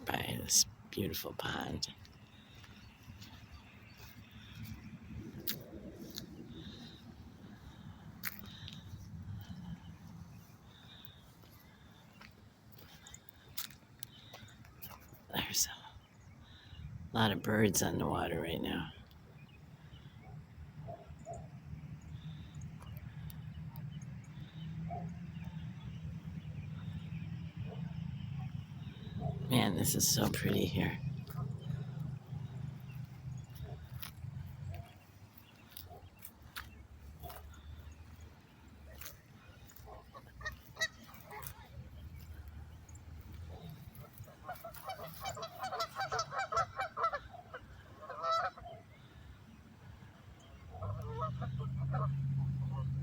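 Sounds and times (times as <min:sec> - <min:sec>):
geese honking: 0:38.9 - 0:49.3, 0:50.1 - 0:53.0
waterfowl calling: 0:38.9 - 0:49.3, 0:50.4 - 0:52.9.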